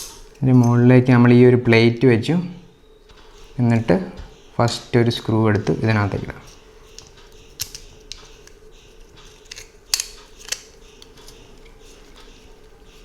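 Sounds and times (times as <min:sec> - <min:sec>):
small clicks and taps of parts: 0:07.0 - 0:08.6.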